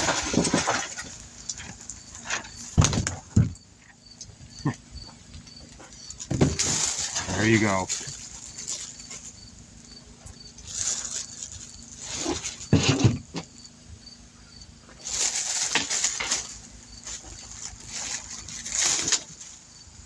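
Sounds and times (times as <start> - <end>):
rustling and flapping: 0.0 - 3.6, 5.1 - 13.5, 15.0 - 19.8
steady low hum: 0.0 - 20.0.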